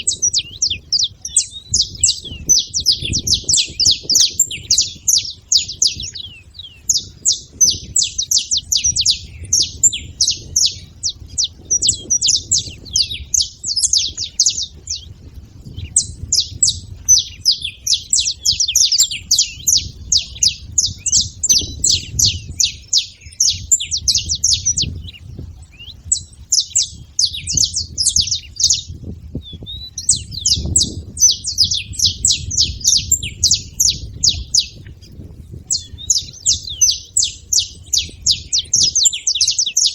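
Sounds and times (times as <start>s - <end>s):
finches chirping and singing: 0.0s - 39.9s.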